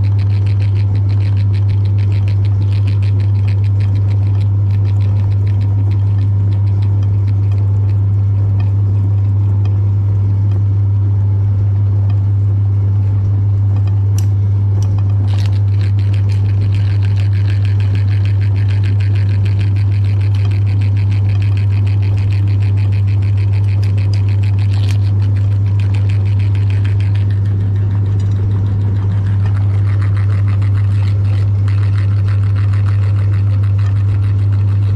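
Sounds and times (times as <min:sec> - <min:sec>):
electric meat grinder running: 0:15.2 - 0:34.9.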